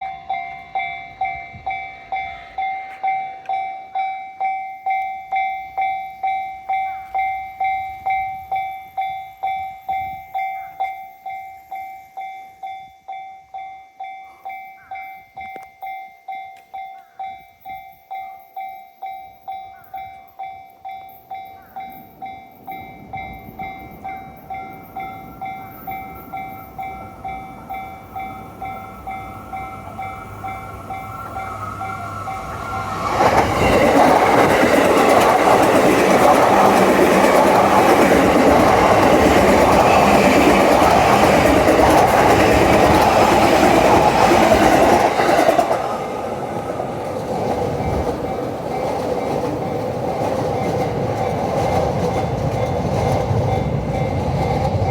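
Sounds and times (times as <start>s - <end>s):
level-crossing warning bell: 0.0s - 54.9s
train rumbling past: 20.8s - 54.9s.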